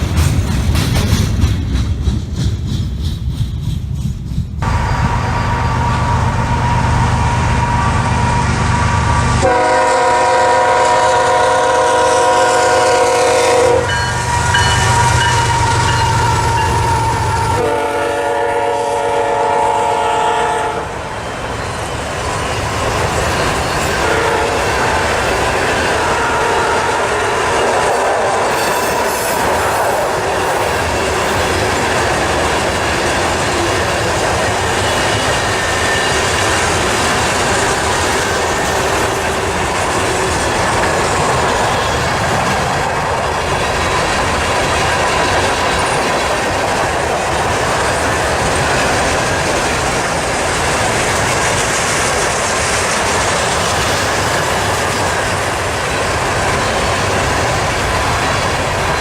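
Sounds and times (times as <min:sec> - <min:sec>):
diesel locomotive rumble: 0:00.0 - 0:59.0
train cars rattling by: 0:00.0 - 0:59.0
train air horn blasts: 0:04.6 - 0:21.0, 0:23.9 - 0:25.2, 0:25.8 - 0:30.3.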